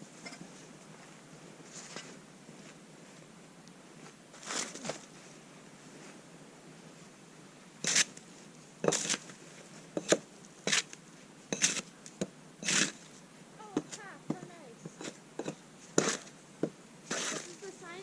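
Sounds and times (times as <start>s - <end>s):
footsteps crunching in snow: 17.1s - 18.0s.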